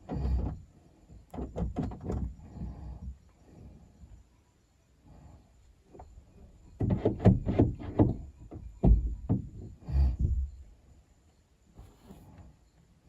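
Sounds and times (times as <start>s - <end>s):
knocks and clunks: 0.0s - 3.2s, 6.7s - 10.7s
heavy thumps: 6.8s - 10.7s.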